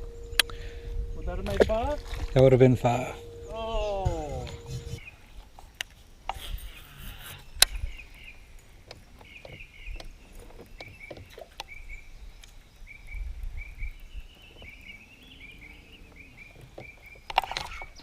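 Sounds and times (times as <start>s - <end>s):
short high chirps: 0.0s - 5.0s.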